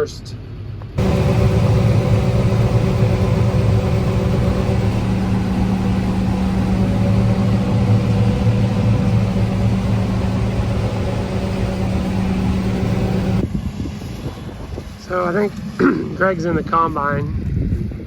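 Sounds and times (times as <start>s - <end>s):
tractor engine running: 1.0s - 13.5s.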